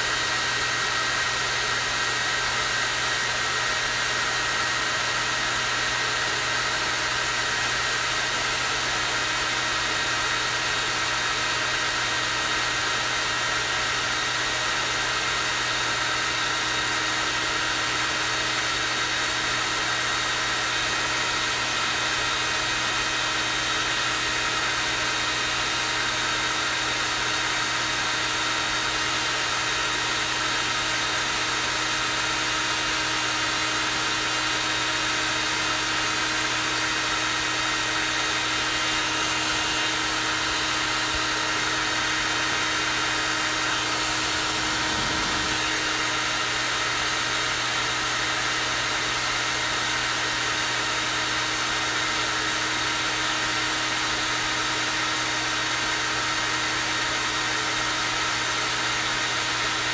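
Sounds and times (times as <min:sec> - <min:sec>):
hair dryer running: 0:00.0 - 0:59.9.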